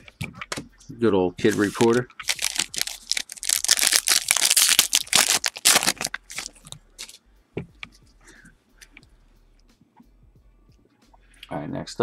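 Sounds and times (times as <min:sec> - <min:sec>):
foil wrapper tearing and crinkling: 0:01.5 - 0:07.2.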